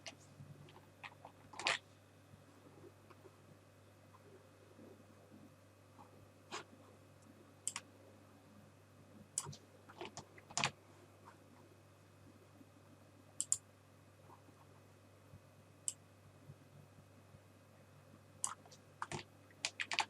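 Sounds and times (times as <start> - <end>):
faint steady hum: 0.0 - 20.0
mouse and keyboard clicks: 7.6 - 7.8, 9.4 - 10.8, 13.4 - 13.6, 18.4 - 20.0.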